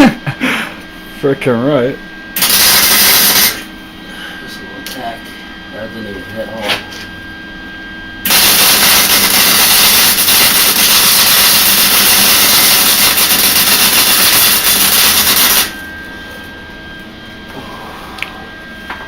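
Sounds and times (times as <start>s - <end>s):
welder crackling hiss: 2.4s - 3.6s, 8.3s - 15.8s.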